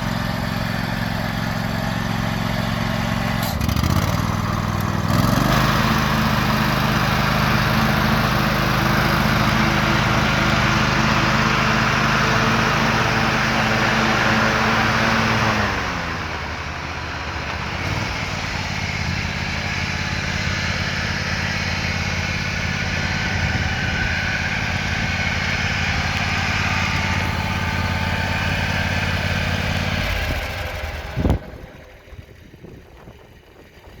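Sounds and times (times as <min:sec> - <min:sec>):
riding mower engine running: 0:00.0 - 0:34.0.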